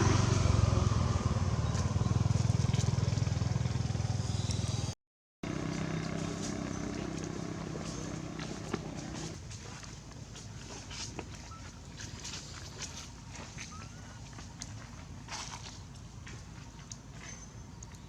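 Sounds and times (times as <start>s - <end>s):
motor engine humming: 0.0s - 9.9s.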